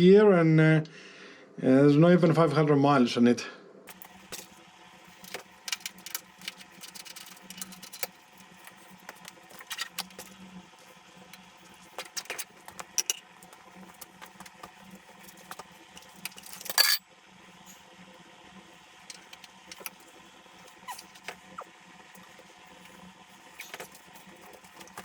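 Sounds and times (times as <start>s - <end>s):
hand tools and metal parts clicking: 3.9s - 10.4s, 11.3s - 17.0s, 19.1s - 21.4s, 23.5s - 25.0s.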